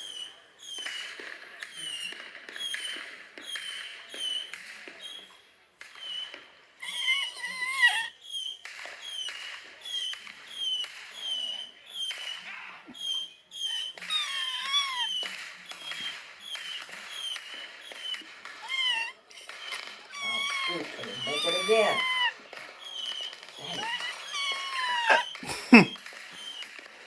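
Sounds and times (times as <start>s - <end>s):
wavering whine-like cries: 13.7s - 16.1s, 18.6s - 25.8s
short falling chirps: 23.6s - 26.6s.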